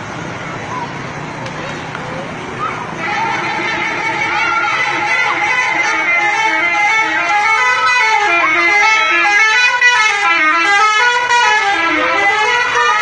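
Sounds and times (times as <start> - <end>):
musical air horn melody: 3.0 - 13.0.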